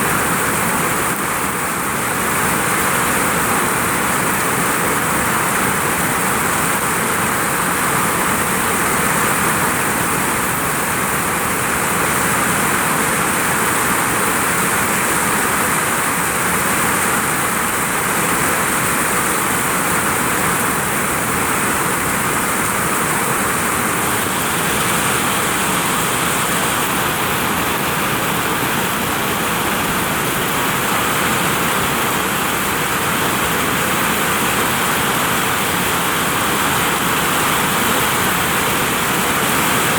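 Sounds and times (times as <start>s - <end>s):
heavy rain on a vinyl roof: 0.0s - 39.9s.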